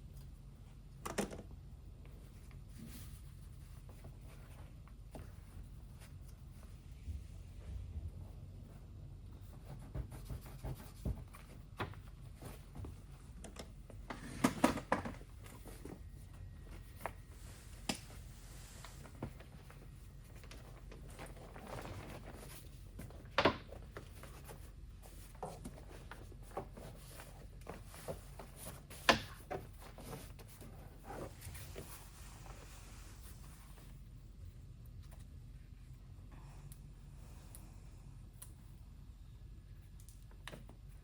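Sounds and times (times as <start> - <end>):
fabric rustling: 15.2 - 34.1.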